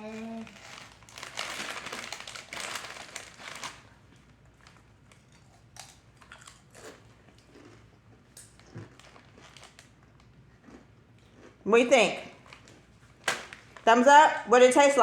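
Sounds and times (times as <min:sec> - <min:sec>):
chip bag crinkling: 0:00.0 - 0:11.5, 0:12.4 - 0:13.9
chips crunching: 0:04.7 - 0:11.6.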